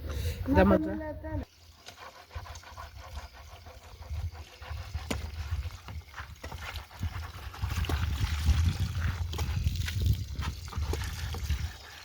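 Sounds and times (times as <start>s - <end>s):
wind buffeting microphone: 3.6s - 12.0s.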